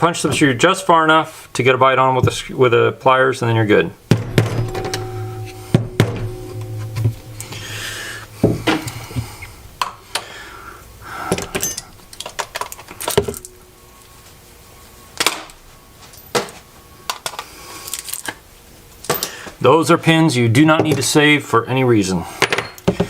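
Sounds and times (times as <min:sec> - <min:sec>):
sharp knock: 0:04.1 - 0:09.6.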